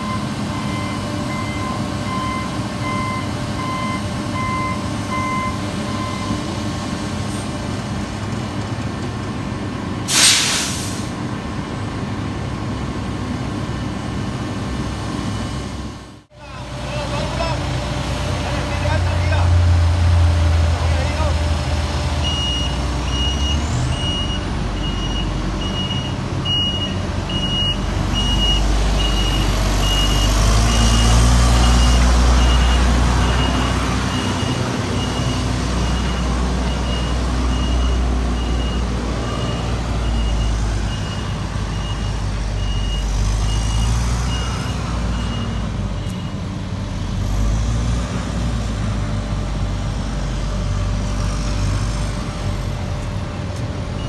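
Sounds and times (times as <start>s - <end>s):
reversing alarm beeping: 0.0s - 6.6s, 22.2s - 46.6s
heavy diesel machinery running: 0.0s - 54.0s.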